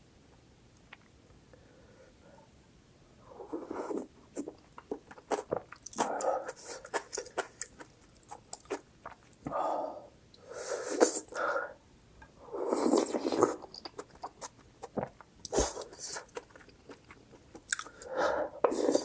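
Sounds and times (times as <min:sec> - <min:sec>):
wet chewing: 0:04.4 - 0:09.4, 0:13.0 - 0:18.1.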